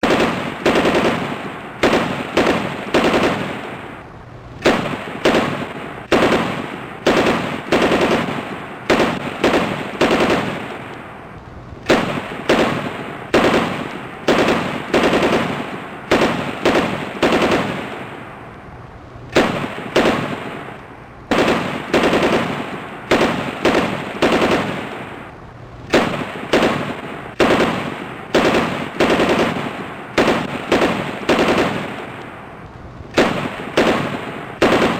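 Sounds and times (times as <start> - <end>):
machine gun bursts: 0.0 - 3.6, 4.6 - 10.8, 11.8 - 17.8, 21.3 - 24.8, 25.9 - 32.1, 33.1 - 34.9.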